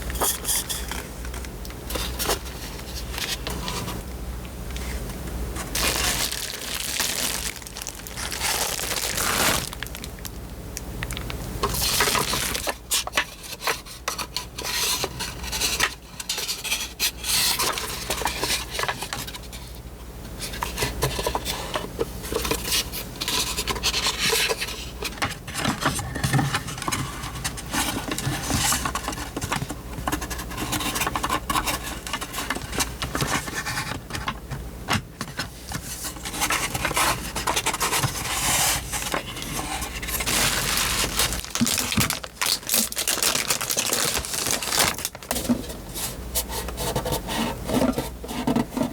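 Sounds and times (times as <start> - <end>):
rustling paper and plastic packaging: 5.5 - 16.6, 35.8 - 47.0.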